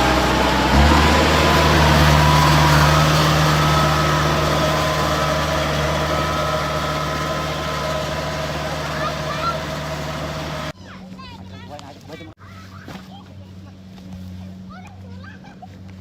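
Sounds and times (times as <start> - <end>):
vehicle engine running: 0.0 - 10.8.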